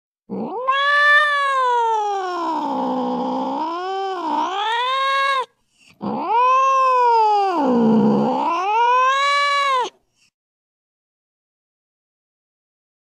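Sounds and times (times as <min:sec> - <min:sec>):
animal yowling: 0:00.3 - 0:10.0.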